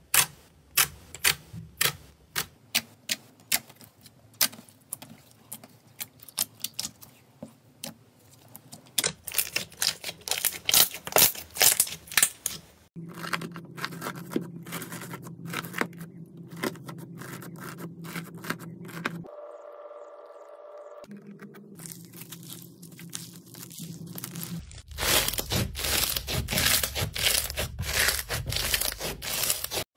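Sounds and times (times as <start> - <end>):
sticky slime crackling and popping: 9.0 - 14.0
steady low hum: 13.0 - 27.0.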